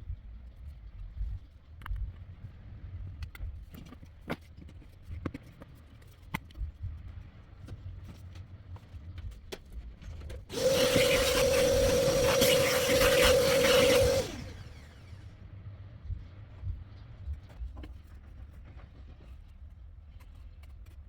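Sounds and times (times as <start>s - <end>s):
power tool whining: 10.5s - 15.3s.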